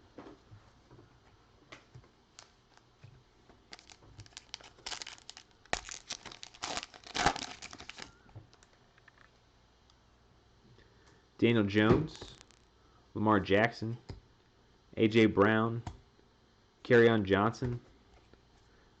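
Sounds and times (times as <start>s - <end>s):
foil wrapper crinkling and tearing: 3.7s - 9.3s.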